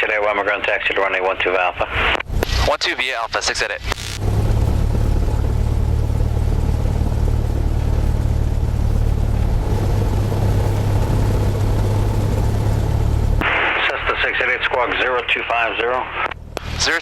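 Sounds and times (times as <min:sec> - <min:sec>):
radio voice: 0:00.0 - 0:04.2, 0:13.4 - 0:17.0
plane engine and propeller drone: 0:00.0 - 0:17.0.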